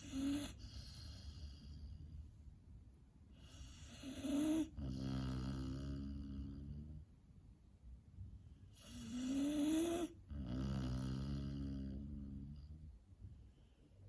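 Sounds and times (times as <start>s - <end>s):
puppy snoring: 0.0s - 2.2s, 3.4s - 7.1s, 8.8s - 12.9s.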